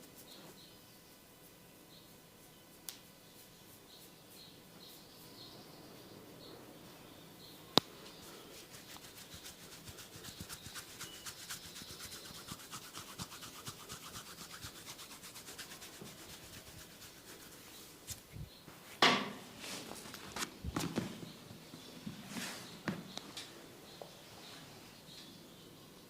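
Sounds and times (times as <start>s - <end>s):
rapid massage rubbing strokes: 8.2s - 18.5s.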